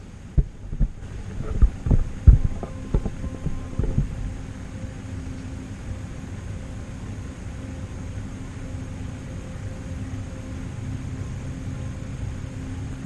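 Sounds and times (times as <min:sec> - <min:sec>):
rush of air: 0:00.0 - 0:04.7
hvac system humming: 0:00.0 - 0:13.0.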